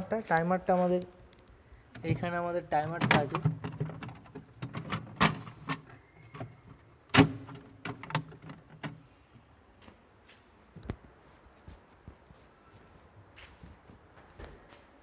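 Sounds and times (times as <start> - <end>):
hands tapping refrigerator parts: 2.0 - 9.0.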